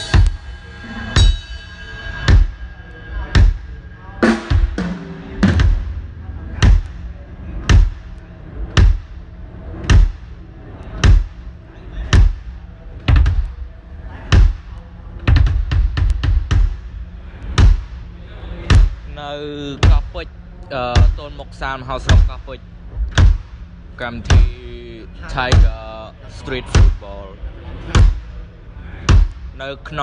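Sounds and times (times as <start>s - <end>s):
drum hits: 0.0s - 2.7s, 3.3s - 9.2s, 9.8s - 10.4s, 11.0s - 11.5s, 12.1s - 13.5s, 15.3s - 16.9s, 17.6s - 18.1s, 18.7s - 19.2s, 19.8s - 20.2s, 21.0s - 24.7s, 25.4s - 25.8s, 26.7s - 27.1s, 27.9s - 28.3s.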